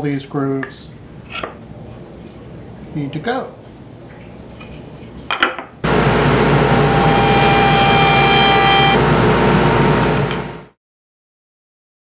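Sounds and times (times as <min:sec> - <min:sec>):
table saw cutting wood: 0:05.8 - 0:10.7
high ringing whine: 0:05.9 - 0:10.2.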